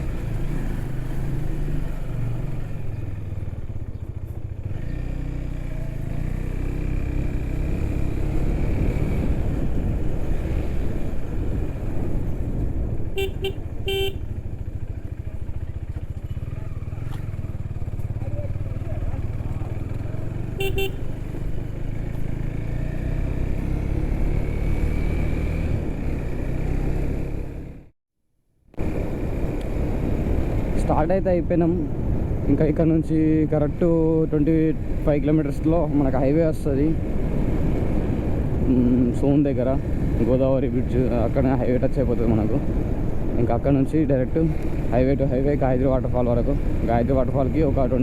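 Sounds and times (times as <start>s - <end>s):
motorcycle engine riding: 0.0s - 27.9s, 28.8s - 48.0s
road noise: 0.0s - 27.9s, 28.7s - 48.0s
horn beeps: 13.1s - 14.2s, 20.6s - 21.1s.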